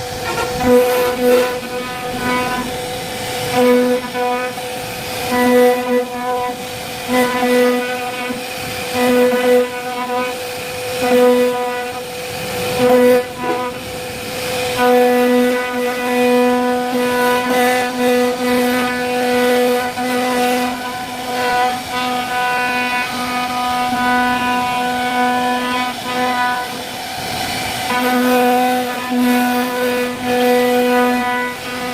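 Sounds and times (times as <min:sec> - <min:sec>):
router spindle whining: 0:00.0 - 0:05.4, 0:19.8 - 0:31.9
bit cutting wood: 0:00.0 - 0:31.9.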